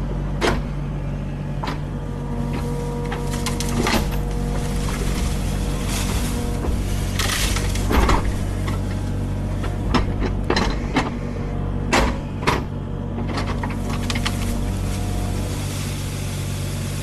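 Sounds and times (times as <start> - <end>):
diesel engine running: 0.0 - 17.0
sharp clanks and knocks: 2.5 - 11.3, 11.9 - 15.4.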